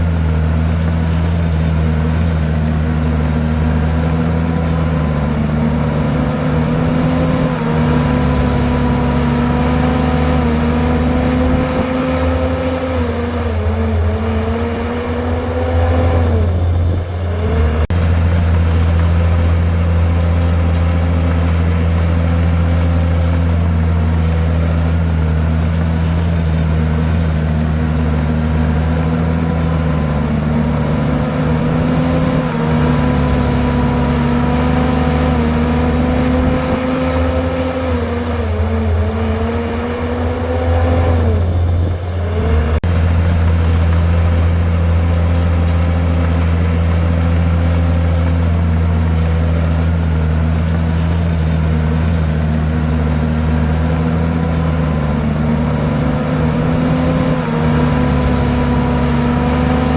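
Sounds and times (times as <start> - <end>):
bulldozer diesel engine running: 0.0 - 59.9
rocks and soil being pushed: 0.0 - 59.9.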